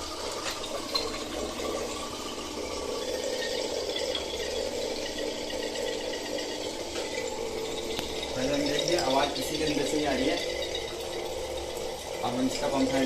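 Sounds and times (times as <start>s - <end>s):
water pump running loudly: 0.0s - 13.0s.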